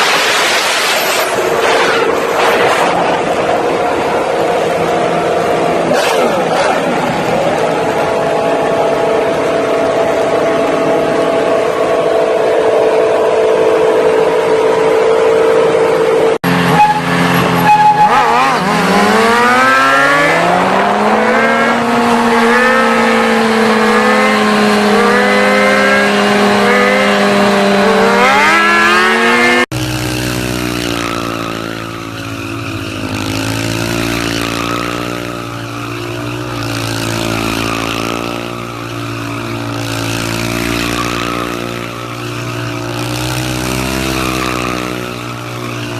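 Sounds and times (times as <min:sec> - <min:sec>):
engine accelerating: 0:00.0 - 0:45.9.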